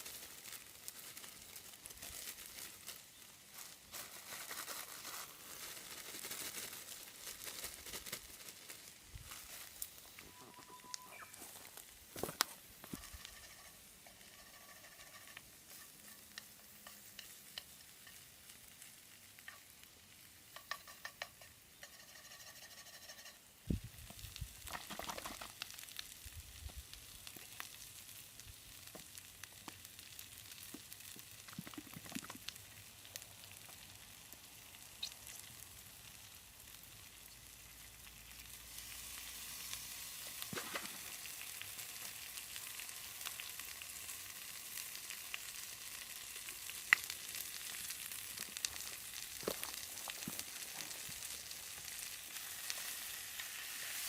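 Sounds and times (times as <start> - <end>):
noodles sizzling in a skillet: 0.0 - 54.0.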